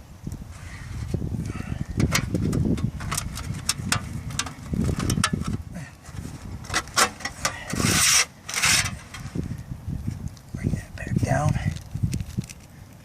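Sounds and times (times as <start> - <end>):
long hissing scrape: 0.5 - 1.9, 7.3 - 9.5
rubber scraping and tapping: 2.0 - 9.4.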